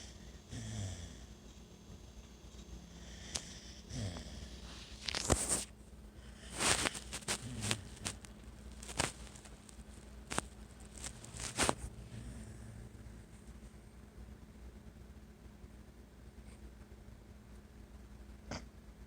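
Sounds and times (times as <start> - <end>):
dog snorting and snuffling: 3.0 - 9.4, 10.3 - 13.6.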